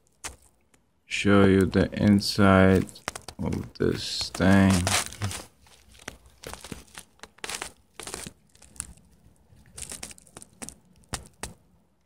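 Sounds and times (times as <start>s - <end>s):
tablet handling rustle and clicks: 2.5s - 11.6s.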